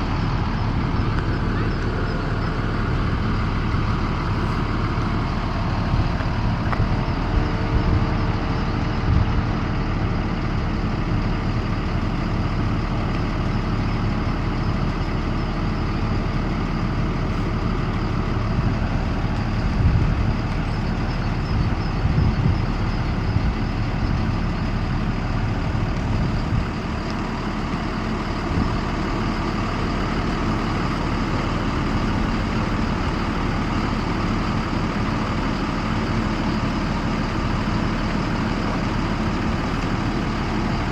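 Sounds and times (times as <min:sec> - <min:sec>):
bus engine idling: 0:00.0 - 0:40.9.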